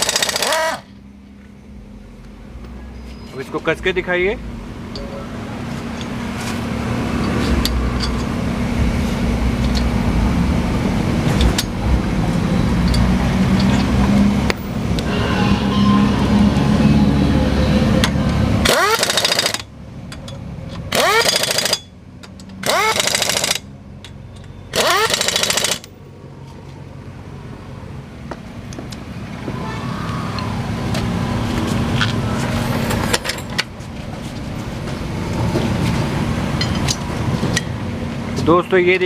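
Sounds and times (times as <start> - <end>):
air impact wrench hammering: 0.0 - 0.9, 18.0 - 23.7, 24.7 - 25.9
loud low running sound: 1.4 - 18.7.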